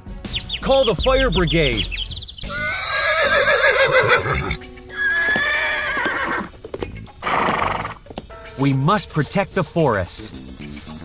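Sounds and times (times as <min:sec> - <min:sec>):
horse whinnying: 0:02.4 - 0:08.1.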